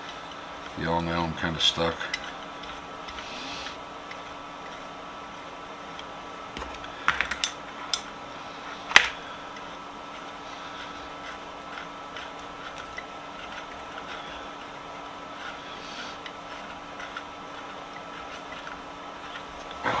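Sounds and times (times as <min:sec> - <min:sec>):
faint steady hum: 0:00.0 - 0:20.0.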